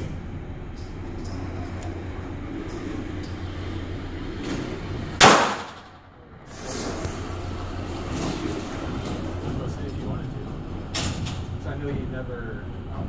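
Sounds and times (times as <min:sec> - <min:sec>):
pistol gunshot: 0:05.2 - 0:06.0.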